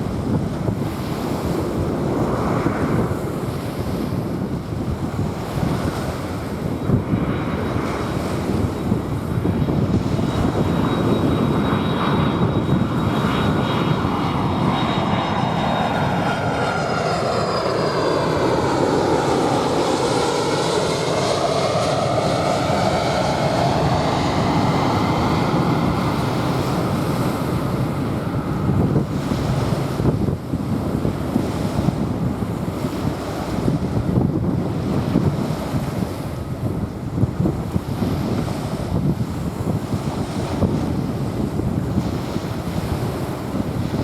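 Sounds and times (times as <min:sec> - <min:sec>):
jet airliner engine roar: 0:00.0 - 0:44.0.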